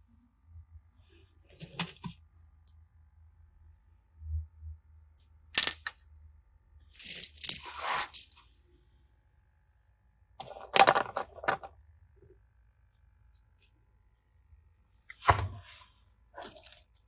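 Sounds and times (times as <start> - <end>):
small objects clicking: 7.0 - 8.3
scraping of small objects: 7.0 - 8.4, 10.4 - 11.7.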